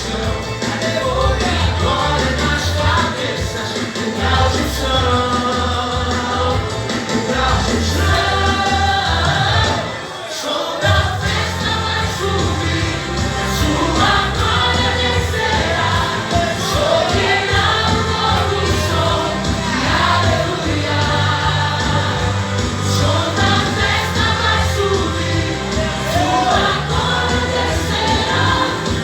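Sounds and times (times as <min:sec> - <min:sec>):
drum beat: 0:00.0 - 0:09.9, 0:11.0 - 0:29.0
steady bass: 0:00.0 - 0:09.9, 0:11.0 - 0:29.0
gospel choir singing with band: 0:00.0 - 0:29.0.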